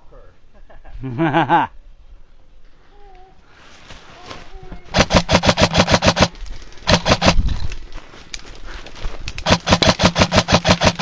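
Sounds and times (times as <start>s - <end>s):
airsoft gun firing bursts: 4.9s - 7.6s, 9.4s - 11.0s.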